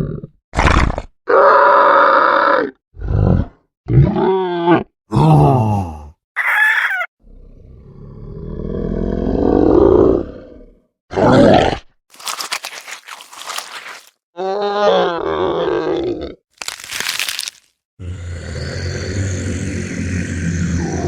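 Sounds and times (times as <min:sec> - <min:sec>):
monster growls and cries: 0:05.1 - 0:07.1.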